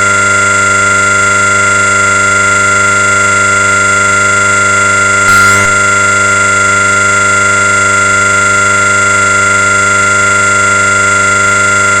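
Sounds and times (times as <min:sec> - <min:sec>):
loud distorted electronic drone: 0:05.3 - 0:05.9.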